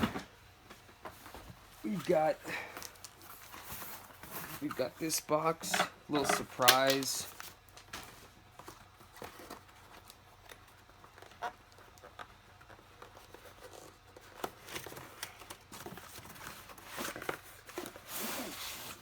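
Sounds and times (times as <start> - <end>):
packaging rustling and tearing: 6.4 - 19.0.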